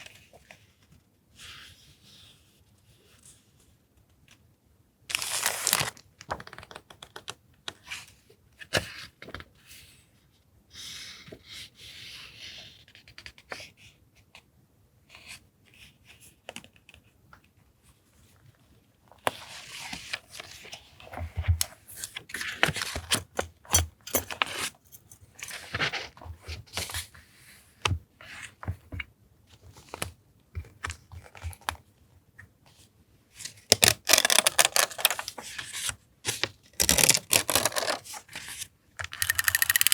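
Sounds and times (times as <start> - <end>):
paper rustling and crinkling: 5.1 - 7.3, 33.4 - 39.9.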